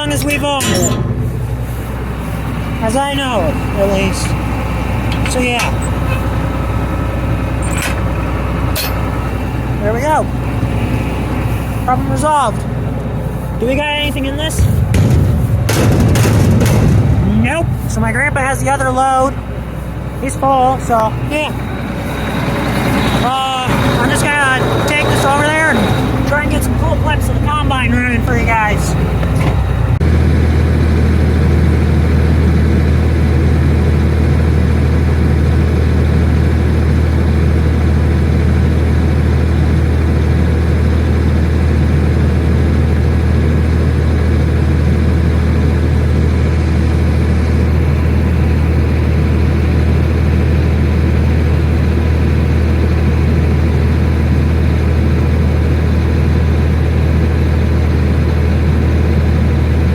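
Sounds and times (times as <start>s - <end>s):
tractor engine running: 0.0s - 59.9s.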